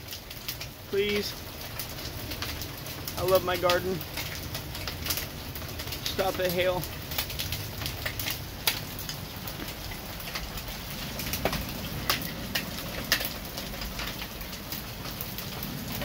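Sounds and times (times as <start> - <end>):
hailstones clicking: 0.0 - 16.0
rainfall hiss: 0.0 - 16.0.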